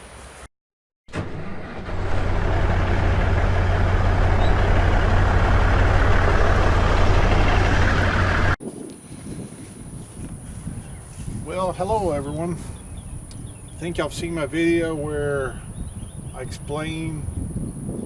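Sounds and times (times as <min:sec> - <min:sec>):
excavator diesel engine running: 0:01.1 - 0:08.6.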